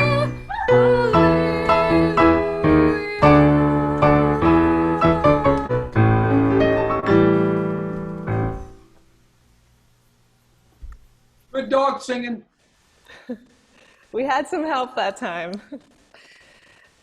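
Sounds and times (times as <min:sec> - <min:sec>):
piano notes and chords: 0:00.0 - 0:09.0.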